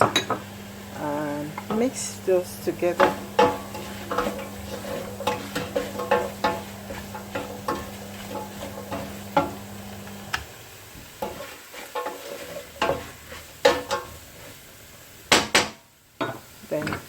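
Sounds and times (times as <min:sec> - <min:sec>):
low hum: 0:00.0 - 0:11.1
food sizzling: 0:00.0 - 0:17.0
utensil knocking against pan: 0:02.6 - 0:09.6.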